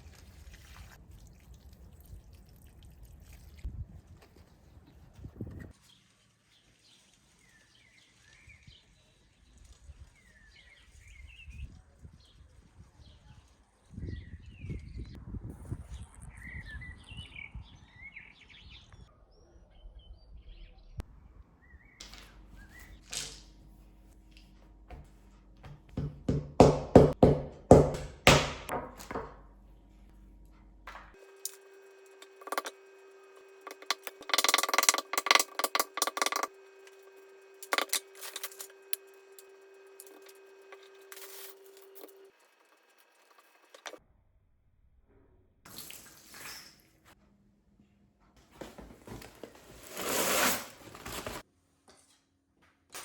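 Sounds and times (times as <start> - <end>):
objects knocking and clattering: 24.9 - 29.6, 32.2 - 32.8, 33.7 - 36.5.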